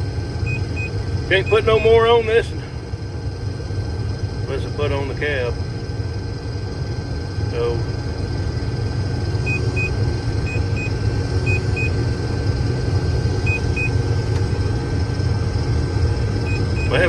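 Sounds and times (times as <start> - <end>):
combine harvester droning: 0.0 - 17.0
short high alarm beeps: 0.4 - 2.2, 9.4 - 12.0, 13.4 - 14.0, 16.4 - 17.0.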